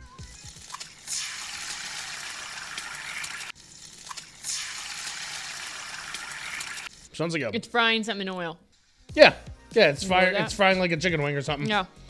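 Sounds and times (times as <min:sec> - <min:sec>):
food sizzling in hot oil: 0:00.2 - 0:07.1.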